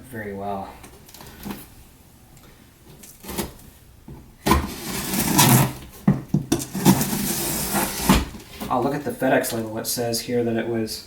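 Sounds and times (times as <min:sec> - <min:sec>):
cardboard rustling and scraping: 0:03.0 - 0:03.7, 0:04.4 - 0:09.7.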